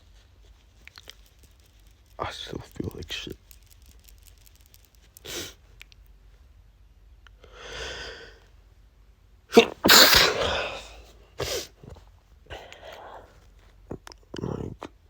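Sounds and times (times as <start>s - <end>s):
sharp burst of breath: 5.3s - 5.6s, 7.4s - 8.4s, 9.6s - 11.8s
drawn-in breath: 7.4s - 8.4s
man sneezing: 9.5s - 11.8s.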